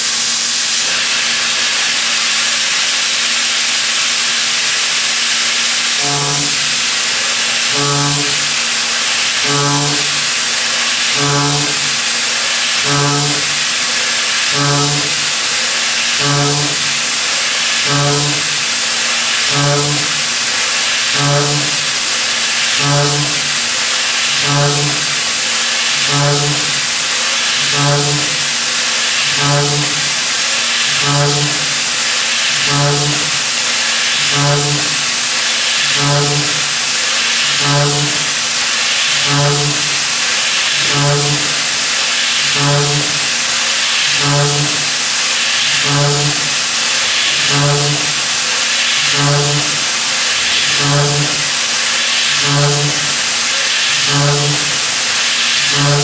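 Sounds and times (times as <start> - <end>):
milling machine hiss and hum: 0.0 - 56.0.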